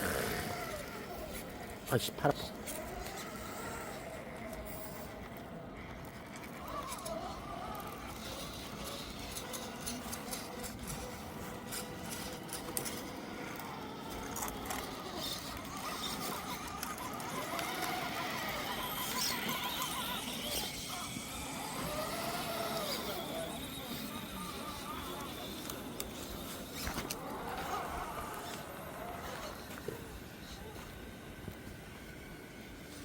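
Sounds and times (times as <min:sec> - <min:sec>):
electric motor whining: 0:00.0 - 0:01.8, 0:02.5 - 0:33.0.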